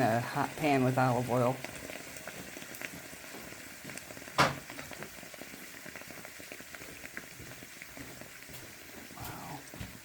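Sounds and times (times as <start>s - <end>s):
hot metal sizzling and crackling: 0.0s - 10.0s
sharp pop: 4.3s - 4.7s.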